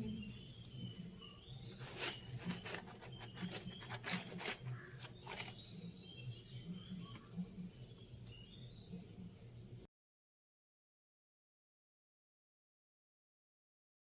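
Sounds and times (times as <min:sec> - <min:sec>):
small birds chirping: 0:00.0 - 0:09.8.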